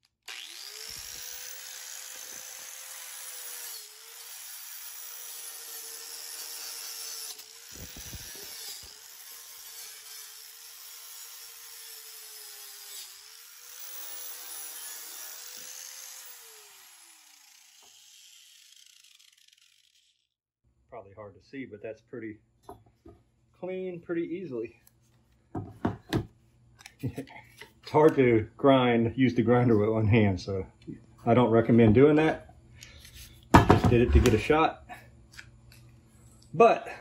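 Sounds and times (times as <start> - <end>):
grinder winding down: 0.2 - 20.2
wire brush grinder scrubbing steel: 0.3 - 20.2.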